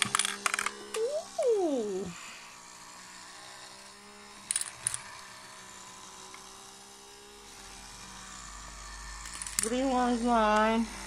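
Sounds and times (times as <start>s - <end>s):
plastic counters clicking: 0.0s - 1.3s, 4.4s - 5.2s, 9.2s - 9.9s
toy motor humming: 0.0s - 11.0s.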